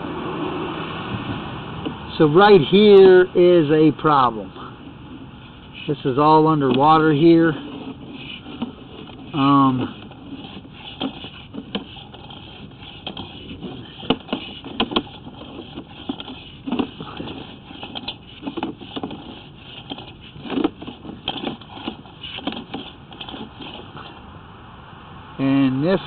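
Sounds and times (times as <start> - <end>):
cable clicking and rattling: 6.5 - 24.1.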